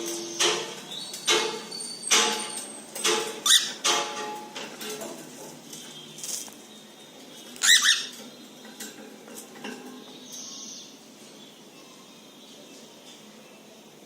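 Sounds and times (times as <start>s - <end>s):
cockatiel chirps: 7.6s - 8.1s.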